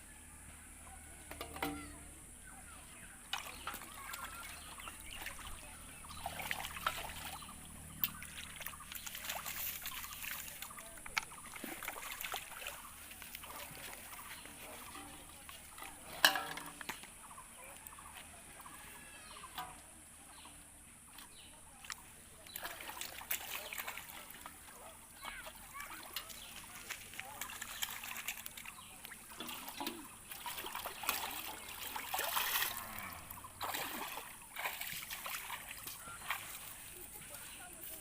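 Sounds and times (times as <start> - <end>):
water trickling and splashing: 1.3 - 38.0
sharp loud splash: 33.6 - 36.6.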